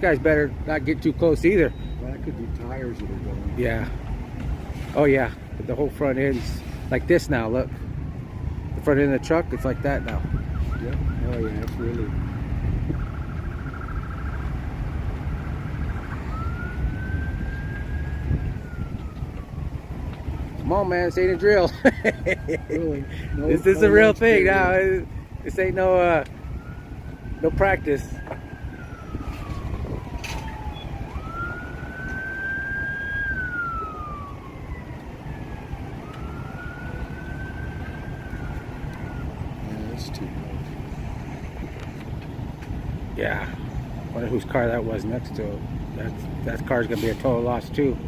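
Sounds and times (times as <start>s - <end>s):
low-pitched background noise: 0.0s - 46.6s
emergency vehicle siren: 0.0s - 48.0s
steady low rumble: 10.2s - 32.1s.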